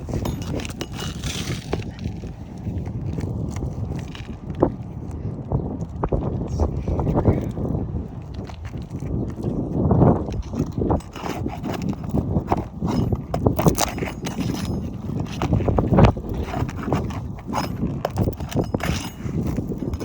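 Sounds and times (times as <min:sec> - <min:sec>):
tools knocking and scraping on roof: 0:00.0 - 0:02.0, 0:10.3 - 0:20.0.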